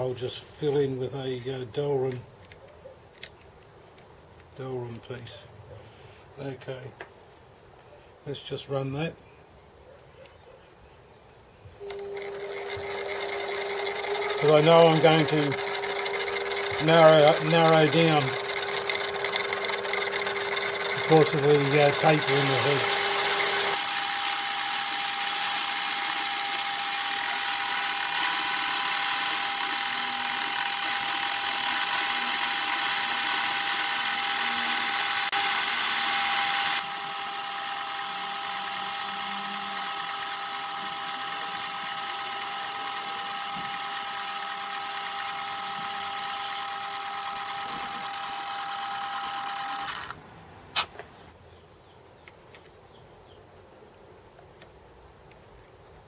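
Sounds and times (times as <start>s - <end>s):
metal lathe whining: 11.8s - 50.2s.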